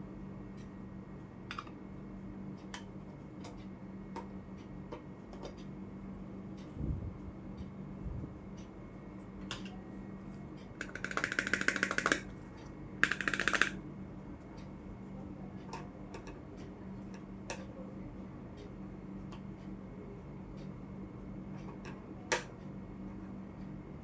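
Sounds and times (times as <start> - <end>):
plastic toy pieces clicking: 10.8 - 12.2, 13.0 - 13.8.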